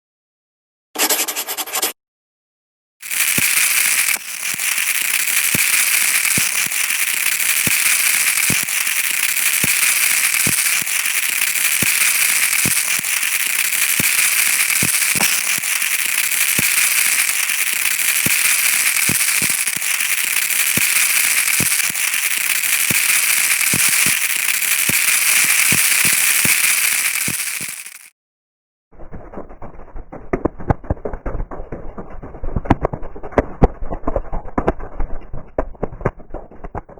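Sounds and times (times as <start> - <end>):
loud hissing with crackling pops: 3.0 - 28.0.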